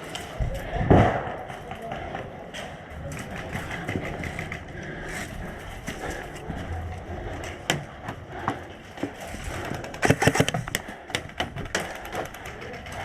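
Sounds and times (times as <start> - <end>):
sharp clicks and knocks: 7.4 - 13.0.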